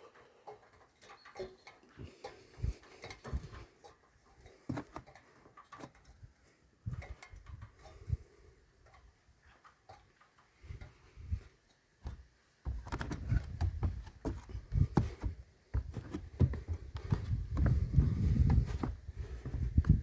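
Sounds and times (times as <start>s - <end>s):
low rumbling handling noise: 12.1s - 20.0s.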